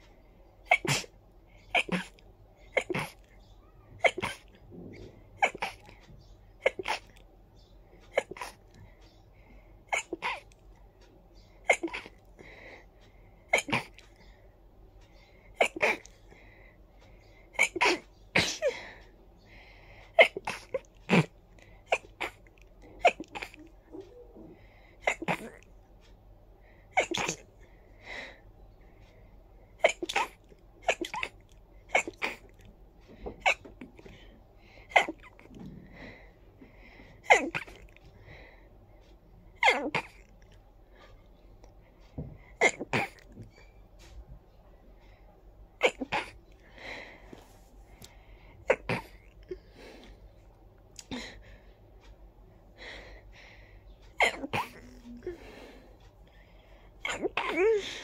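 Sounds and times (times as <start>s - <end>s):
soft breaths: 0.0s - 58.0s
person sneezing: 27.0s - 27.4s.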